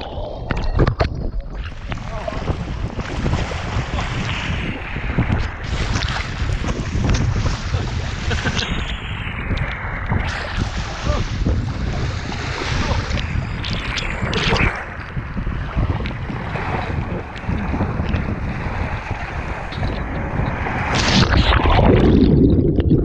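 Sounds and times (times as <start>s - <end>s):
wind buffeting microphone: 0.0s - 23.0s
water rushing down slide: 16.0s - 23.0s.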